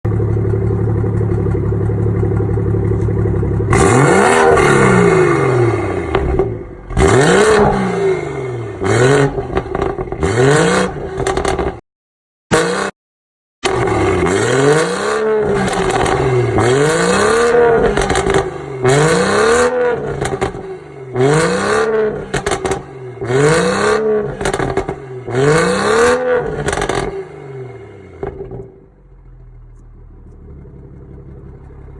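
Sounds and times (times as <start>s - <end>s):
car engine idling and revving: 0.0s - 11.8s, 12.5s - 12.9s, 13.6s - 31.9s
exhaust crackling and popping: 0.1s - 7.9s, 8.8s - 11.8s, 15.4s - 20.8s, 22.0s - 25.4s, 26.0s - 27.2s, 28.2s - 31.9s.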